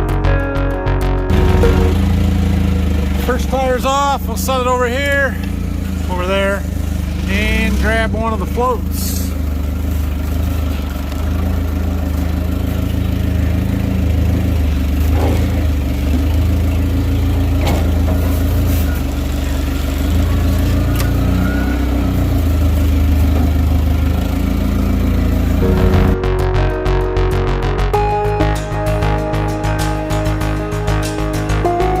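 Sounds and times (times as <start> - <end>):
engine running at low speed: 1.3 - 32.0.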